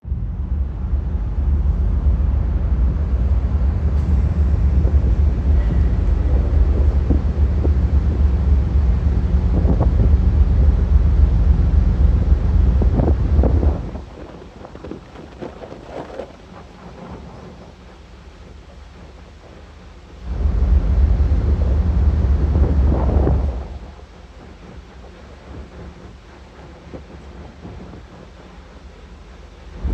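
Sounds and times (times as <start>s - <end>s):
ferry engines rumbling: 0.0s - 29.9s
wind buffeting microphone: 0.0s - 29.9s
wash of noise: 11.3s - 29.9s.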